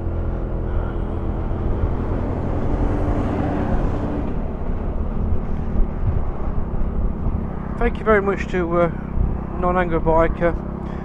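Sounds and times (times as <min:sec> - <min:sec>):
road noise: 0:00.0 - 0:11.0
wind noise: 0:00.0 - 0:11.0.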